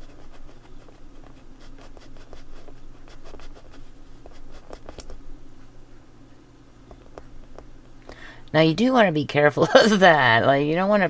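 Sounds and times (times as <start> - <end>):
pencil scratching on paper: 0.0 - 5.2.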